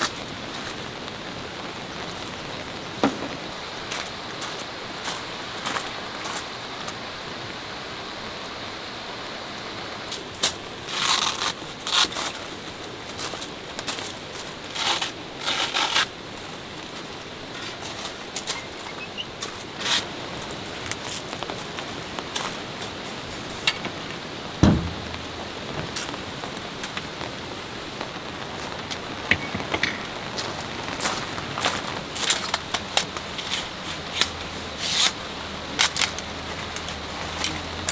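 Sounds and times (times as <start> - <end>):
steady rain falling: 0.0 - 37.9
loud dull thump: 3.0 - 3.5, 24.6 - 25.9
heavy drops ticking: 23.7 - 32.3
clicks and rustles of handling: 28.9 - 37.9.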